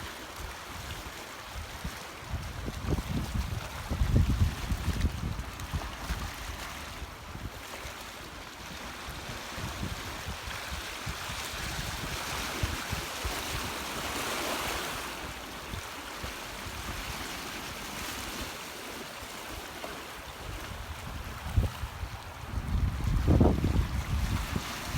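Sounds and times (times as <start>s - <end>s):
sea waves washing onto shore: 0.0s - 24.9s
wind buffeting microphone: 1.8s - 7.6s, 20.5s - 24.9s.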